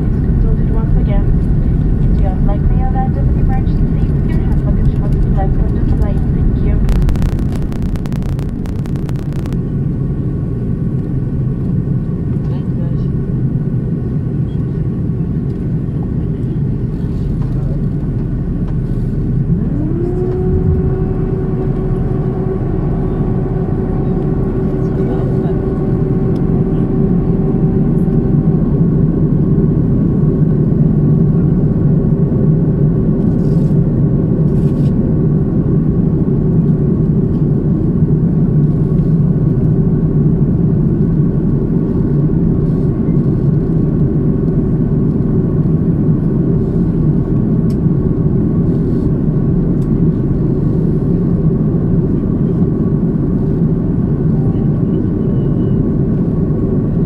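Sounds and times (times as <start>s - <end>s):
engine tones: 0.0s - 9.7s, 19.0s - 30.4s
airliner cabin drone: 0.0s - 57.0s.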